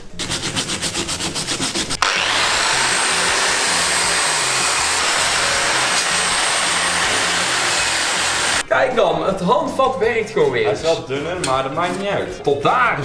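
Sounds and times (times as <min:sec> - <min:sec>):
power tool rasping on metal: 0:00.2 - 0:08.6
faint background music: 0:08.6 - 0:13.0.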